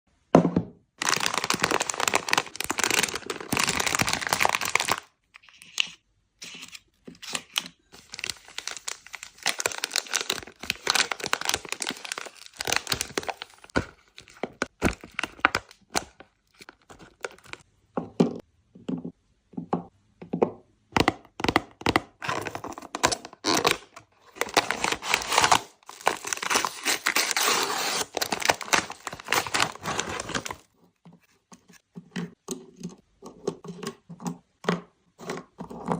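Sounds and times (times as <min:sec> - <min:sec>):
candy wrappers crinkling: 0:01.0 - 0:05.9, 0:07.2 - 0:17.6, 0:22.4 - 0:30.7.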